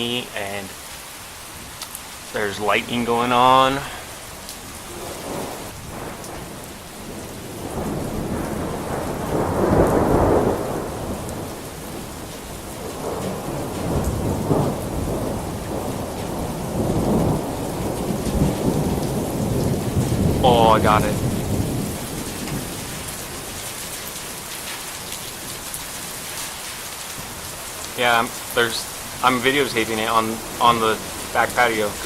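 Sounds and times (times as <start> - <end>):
heavy rain: 0.0 - 32.0
rolling thunder: 4.3 - 24.4.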